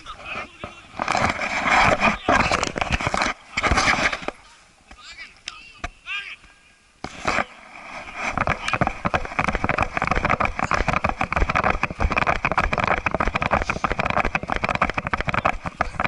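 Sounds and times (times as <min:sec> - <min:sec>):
camera case rattling and knocking: 0:08.3 - 0:16.0.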